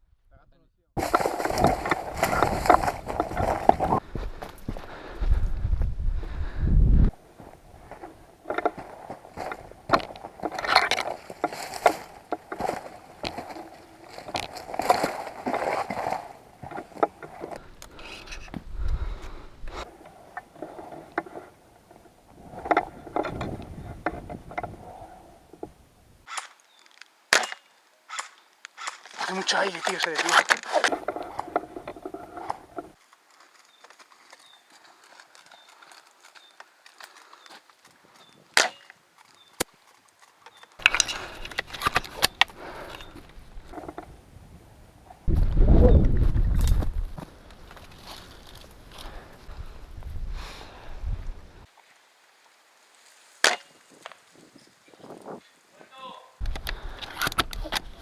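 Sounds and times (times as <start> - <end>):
wind buffeting microphone: 1.0 - 9.9, 18.2 - 19.8, 22.4 - 26.2, 43.2 - 47.2
gear rustling and clicking: 7.9 - 18.6, 28.1 - 38.4.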